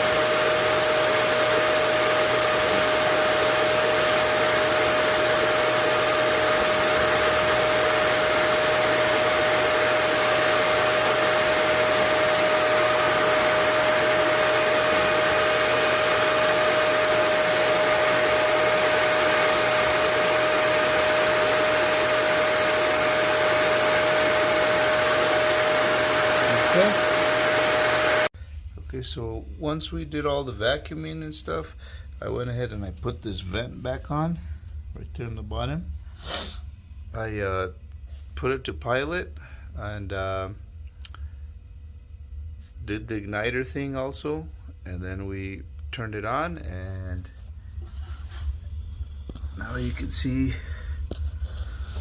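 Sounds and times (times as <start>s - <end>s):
vacuum cleaner running: 0.0s - 28.4s, 36.2s - 36.6s, 47.2s - 52.0s.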